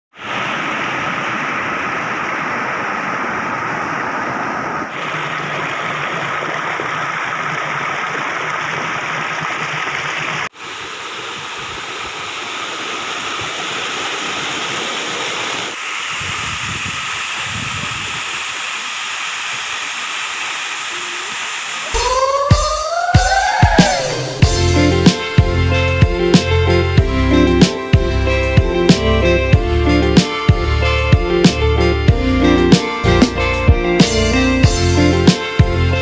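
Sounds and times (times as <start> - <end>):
waterfall rushing: 0.2 - 25.5.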